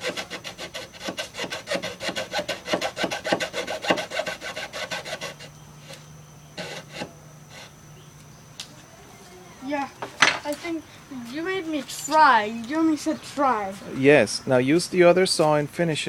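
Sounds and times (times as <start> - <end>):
handsaw cutting wood: 0.0 - 5.5, 6.6 - 7.7.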